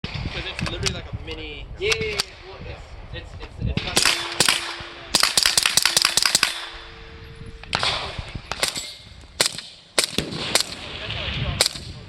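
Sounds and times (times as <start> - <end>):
suppressed gunshots: 3.8 - 7.0, 7.6 - 12.0.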